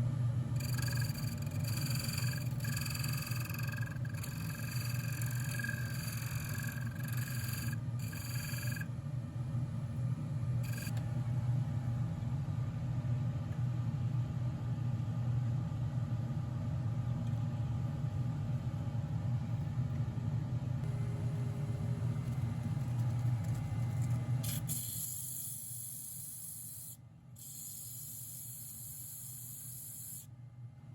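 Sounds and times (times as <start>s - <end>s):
lathe motor humming: 0.6s - 8.8s
hiss: 24.5s - 30.3s.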